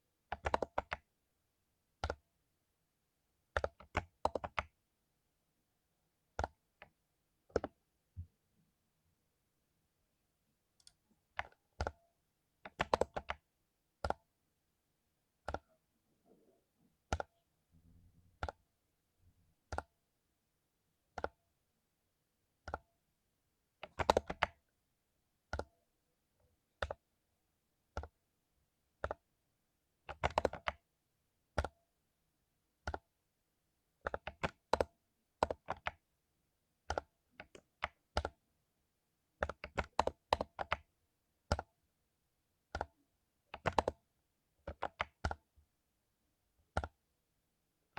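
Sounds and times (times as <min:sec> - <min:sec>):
mechanical keyboard keystrokes: 0:00.3 - 0:01.0, 0:23.8 - 0:24.6, 0:39.4 - 0:40.9, 0:43.5 - 0:44.0.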